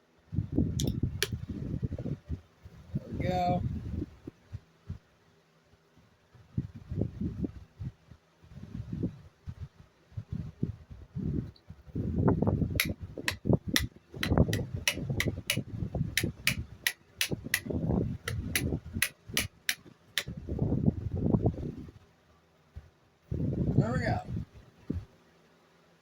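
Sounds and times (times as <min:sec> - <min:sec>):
sharp crisp clicks: 0:12.8 - 0:15.6, 0:16.2 - 0:20.3.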